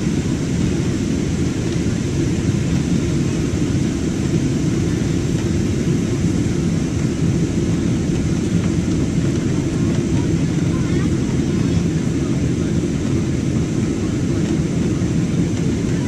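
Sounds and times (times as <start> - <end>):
jet engines rumbling: 0.0 - 16.0.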